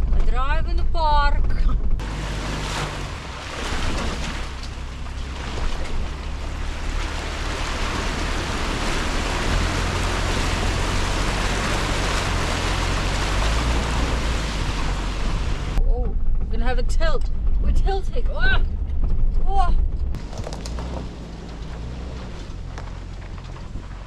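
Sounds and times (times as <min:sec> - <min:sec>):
engine drone: 0:01.4 - 0:24.0
tyres rushing on dirt track: 0:02.0 - 0:15.8, 0:20.2 - 0:24.0.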